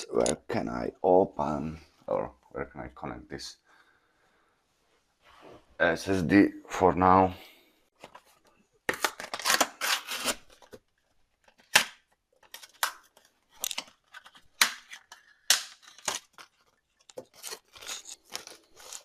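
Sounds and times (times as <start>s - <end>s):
plastic and metal clicks and scrapes: 12.4s - 19.0s.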